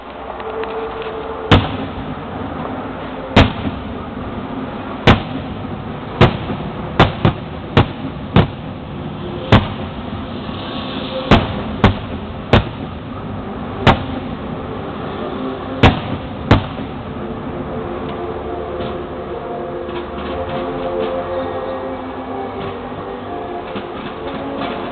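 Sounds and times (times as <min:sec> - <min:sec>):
steady background noise: 0:00.0 - 0:24.9
fireworks bursting in bangs: 0:01.5 - 0:02.1, 0:03.4 - 0:04.0, 0:05.0 - 0:14.4, 0:15.8 - 0:17.0.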